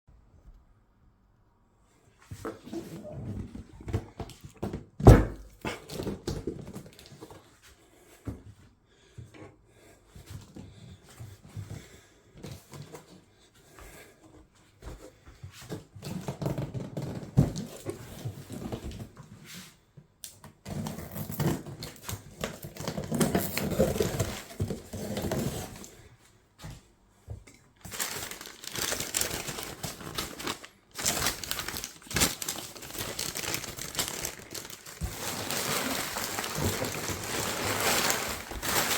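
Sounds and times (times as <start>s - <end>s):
wrapping crinkling and tearing: 21.0s - 25.8s, 27.8s - 38.9s.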